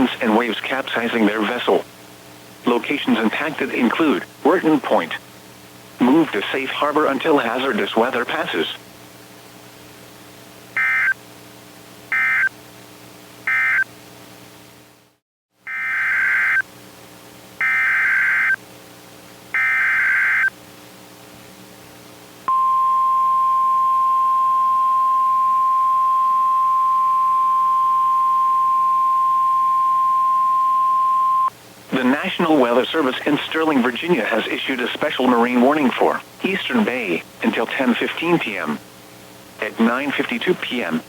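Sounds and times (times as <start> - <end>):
steady alarm tone: 10.8 - 11.2, 12.1 - 12.5, 13.5 - 13.8, 15.7 - 16.6, 17.6 - 18.6, 19.6 - 20.5, 22.5 - 31.5.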